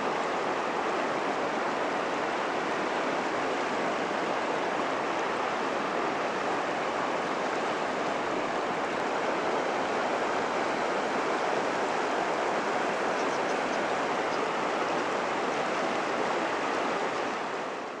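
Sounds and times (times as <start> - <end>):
river water rushing: 0.0 - 18.0.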